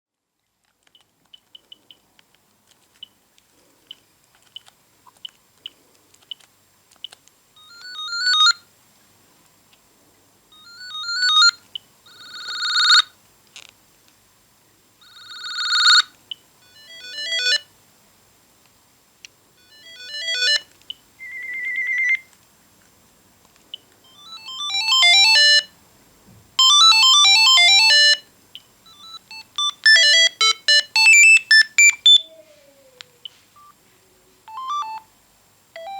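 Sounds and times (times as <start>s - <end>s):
phone ringtone melodies: 7.6s - 8.6s, 10.6s - 13.1s, 15.0s - 17.7s, 19.6s - 22.3s, 24.1s - 25.7s, 26.6s - 28.3s, 28.9s - 32.4s, 34.5s - 35.1s
short key beeps: 28.9s - 32.2s.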